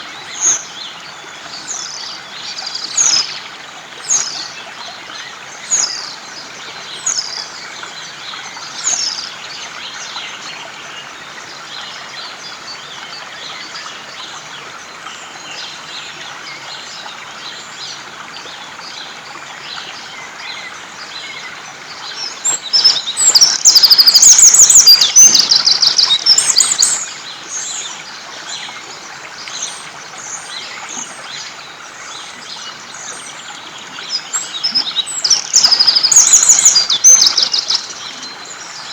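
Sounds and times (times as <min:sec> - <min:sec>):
birds singing and calling: 0:19.0 - 0:38.9
bird high rapid trills: 0:22.7 - 0:27.1, 0:35.2 - 0:37.9.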